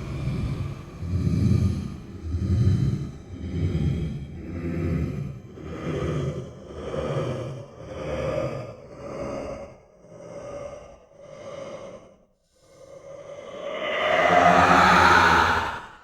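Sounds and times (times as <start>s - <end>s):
monster breathing: 12.7s - 16.0s.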